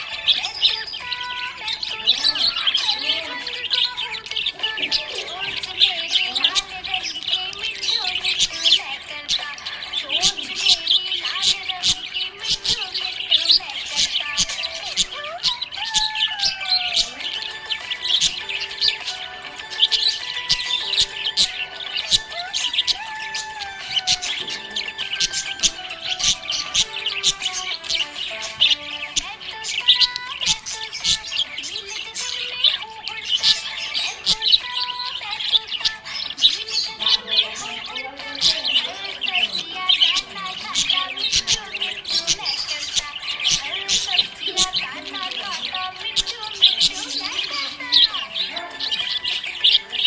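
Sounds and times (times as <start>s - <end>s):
budgerigars chirping: 0.0s - 50.0s
background music held notes: 14.4s - 41.5s.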